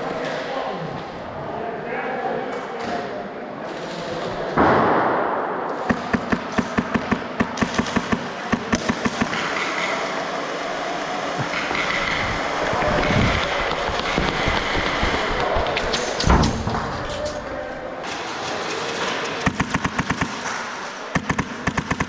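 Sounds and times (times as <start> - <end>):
airsoft rifle shots: 4.6 - 10.1, 11.4 - 12.5, 19.4 - 22.0.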